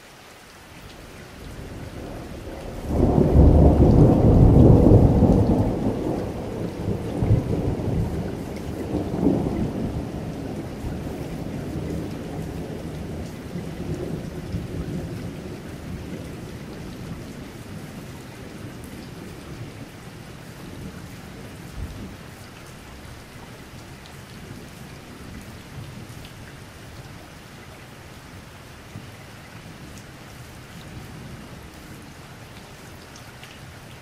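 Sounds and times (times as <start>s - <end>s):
light rain: 0.0s - 34.0s
thunder rumbling: 1.6s - 19.8s.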